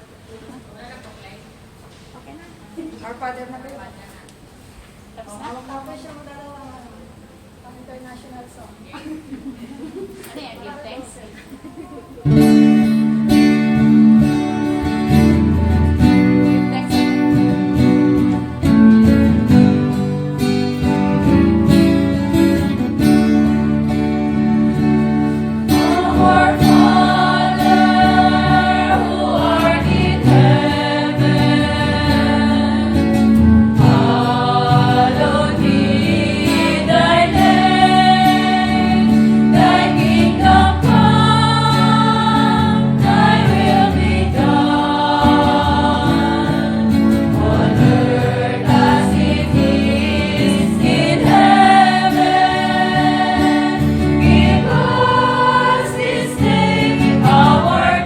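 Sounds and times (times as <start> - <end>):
guitars: 12.2 - 58.0
choir singing: 23.2 - 58.0.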